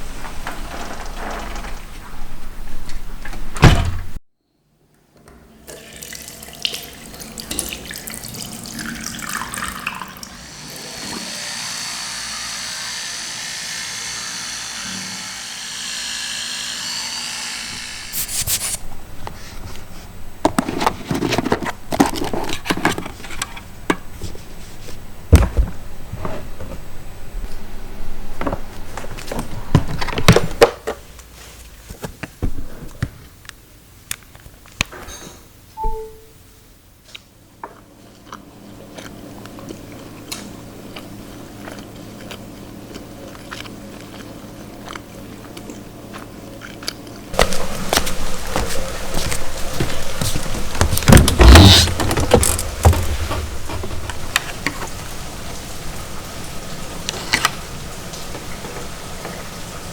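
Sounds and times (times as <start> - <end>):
water running from a tap: 5.7 - 11.6
irregular knocks and clatters: 47.4 - 55.0.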